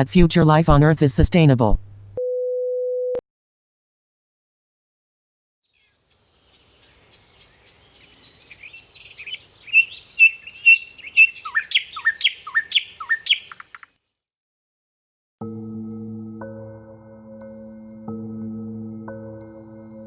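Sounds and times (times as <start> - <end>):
birds chirping and singing: 5.7 - 14.2.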